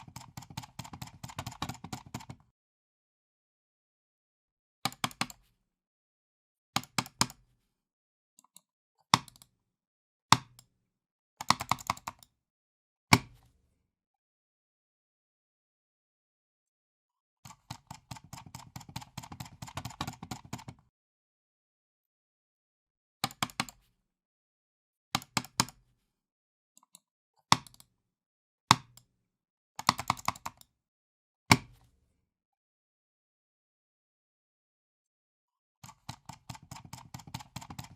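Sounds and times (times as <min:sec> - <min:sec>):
computer mouse clicks: 0:00.0 - 0:02.4, 0:04.9 - 0:05.5, 0:06.8 - 0:07.4, 0:08.4 - 0:09.5, 0:11.4 - 0:12.3, 0:17.5 - 0:20.8, 0:23.2 - 0:23.9, 0:25.2 - 0:25.8, 0:26.8 - 0:27.9, 0:29.8 - 0:30.7, 0:35.8 - 0:37.9.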